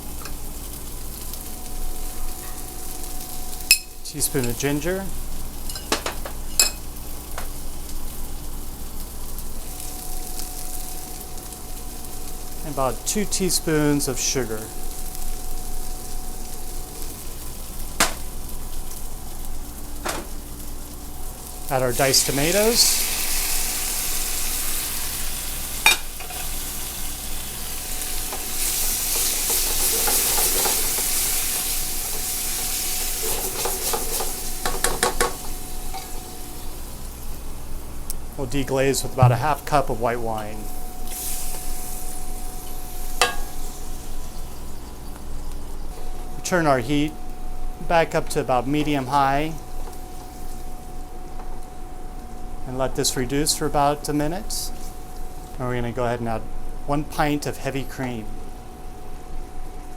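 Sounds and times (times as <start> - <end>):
onions sizzling in a pan: 0.0 - 38.4, 39.2 - 48.1, 48.8 - 52.6, 54.1 - 55.6
spoon scraping a pan: 28.4 - 36.3, 43.1 - 43.7.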